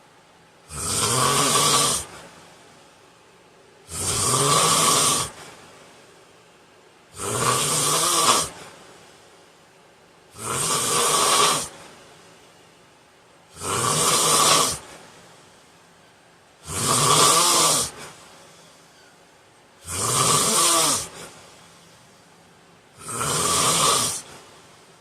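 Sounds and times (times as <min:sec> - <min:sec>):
quiet breathing: 0:00.0 - 0:04.2, 0:05.0 - 0:07.7, 0:08.4 - 0:13.6, 0:14.6 - 0:16.7, 0:17.8 - 0:20.0, 0:20.8 - 0:25.0
man snoring: 0:00.7 - 0:02.2, 0:03.9 - 0:05.4, 0:07.1 - 0:08.7, 0:10.3 - 0:11.8, 0:13.5 - 0:15.0, 0:16.6 - 0:18.2, 0:19.8 - 0:21.3, 0:23.0 - 0:24.4.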